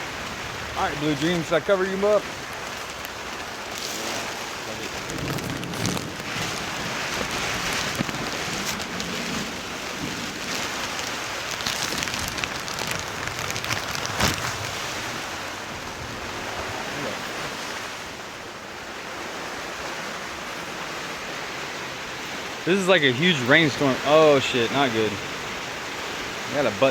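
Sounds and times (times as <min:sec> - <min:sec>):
raindrops pattering: 0:00.0 - 0:16.0
heavy rain and wind: 0:00.0 - 0:26.9.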